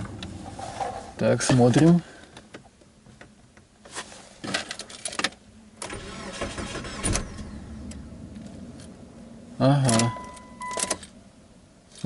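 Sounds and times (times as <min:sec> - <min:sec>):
car engine cranking and running: 0:04.5 - 0:11.2.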